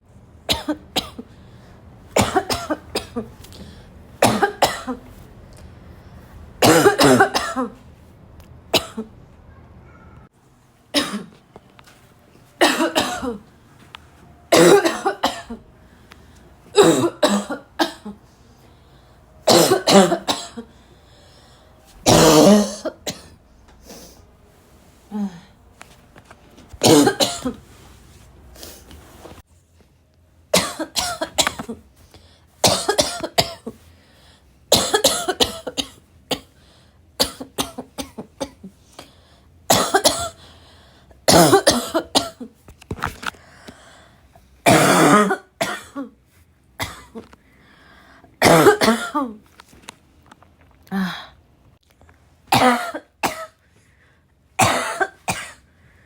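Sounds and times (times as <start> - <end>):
woman coughing: 0.5 - 1.3, 2.2 - 3.4, 4.2 - 5.0, 6.6 - 7.8, 8.8 - 9.1, 11.0 - 11.4, 12.6 - 13.4, 14.5 - 15.6, 16.8 - 18.2, 19.4 - 20.7, 22.0 - 23.4, 26.8 - 27.6, 30.6 - 31.8, 32.6 - 33.9, 34.7 - 36.5, 37.2 - 38.8, 39.7 - 40.4, 41.2 - 42.5, 44.6 - 46.2, 46.8 - 47.3, 48.4 - 49.4, 52.5 - 53.6, 54.6 - 55.7.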